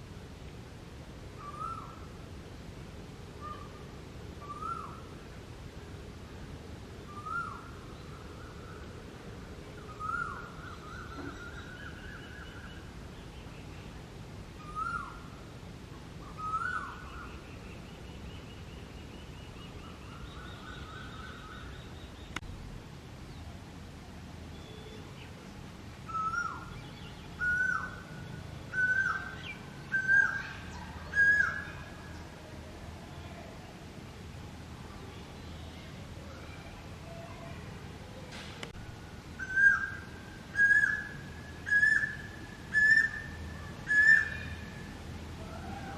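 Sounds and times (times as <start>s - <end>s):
bird whistled calls: 39.4s - 44.7s.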